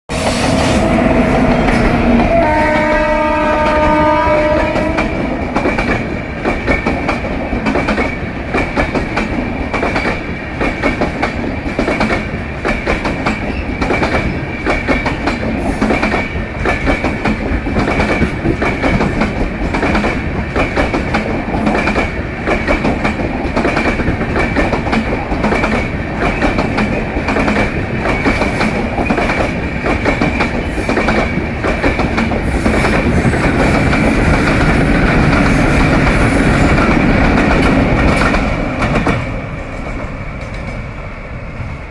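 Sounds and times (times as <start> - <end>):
train horn: 0.1 - 5.6
train rumble: 0.1 - 41.9.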